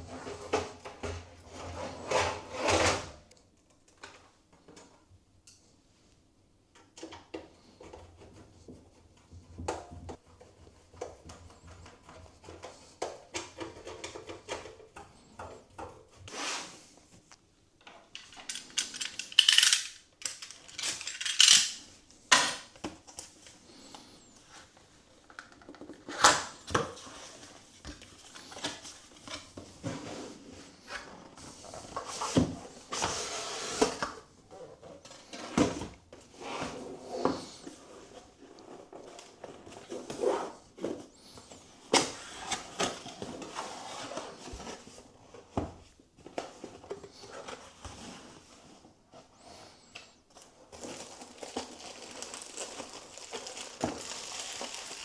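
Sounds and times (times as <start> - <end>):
clicks and clinks of small objects: 18.1 - 21.8.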